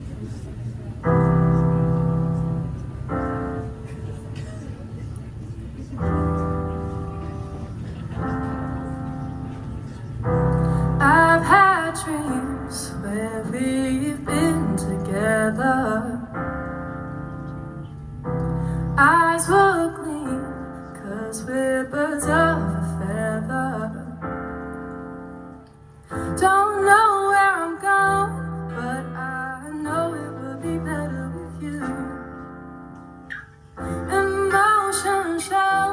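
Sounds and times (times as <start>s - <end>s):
sustained keyboard chords: 0.8s - 35.9s
woman singing: 10.9s - 16.5s, 18.9s - 24.3s, 26.1s - 32.5s, 33.8s - 35.9s.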